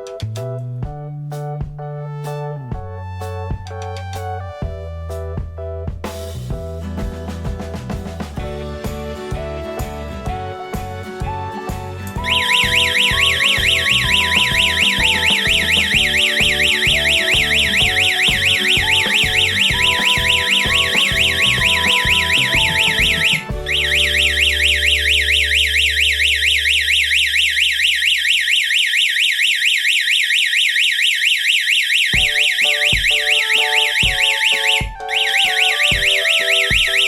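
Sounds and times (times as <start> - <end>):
guitar background music: 5.2 - 26.6, 32.2 - 37.0
security alarm siren warbling: 12.2 - 37.0.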